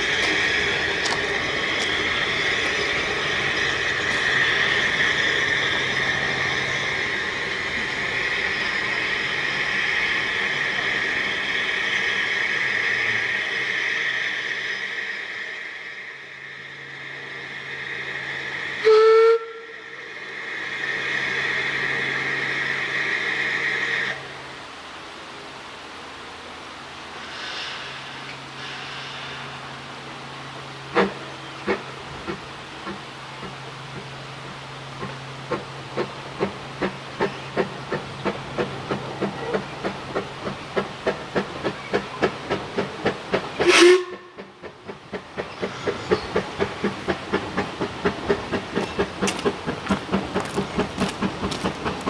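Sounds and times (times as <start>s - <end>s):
steam hissing: 0.0s - 24.6s, 26.8s - 52.0s
steam locomotive whistle: 17.7s - 24.3s, 43.6s - 44.5s.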